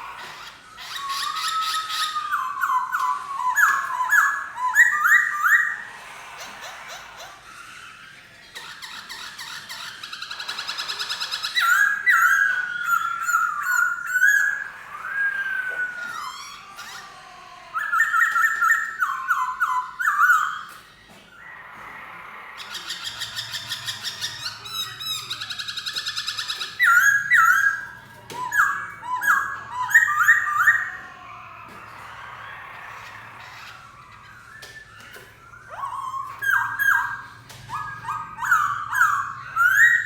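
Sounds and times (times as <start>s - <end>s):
bird singing whistled phrases: 0.7s - 5.8s, 11.0s - 16.9s, 17.8s - 20.8s, 22.6s - 31.0s, 33.0s - 40.0s
fast bird chattering: 22.4s - 31.1s.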